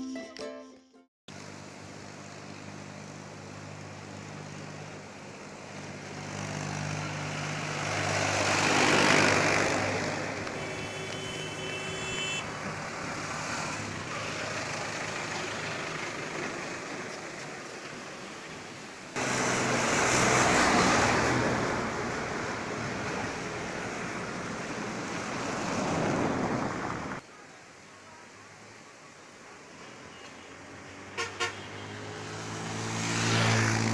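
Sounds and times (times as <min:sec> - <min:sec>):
engine hum: 0:01.3 - 0:27.2
vehicles passing: 0:01.3 - 0:33.9.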